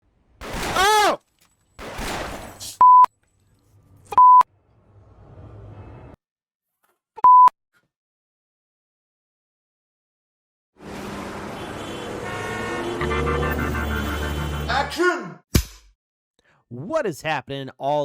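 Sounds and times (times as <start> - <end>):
loud vocal exclamation: 0.6 - 1.2.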